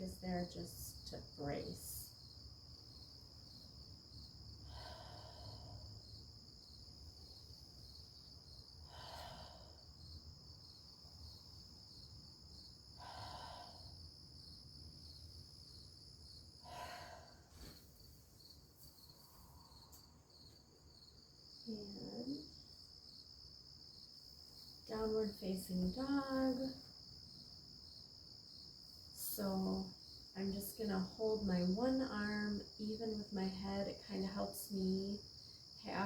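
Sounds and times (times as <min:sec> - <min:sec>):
insects chirring: 0:00.0 - 0:32.7
soft breaths: 0:04.6 - 0:06.2, 0:08.8 - 0:10.1, 0:13.0 - 0:14.0, 0:16.6 - 0:20.6.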